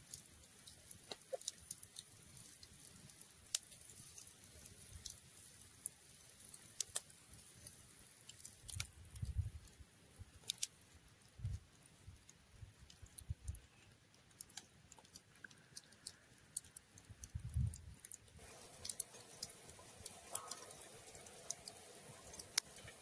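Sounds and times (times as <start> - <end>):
faint clicks and taps: 0.1 - 2.7, 12.2 - 23.0.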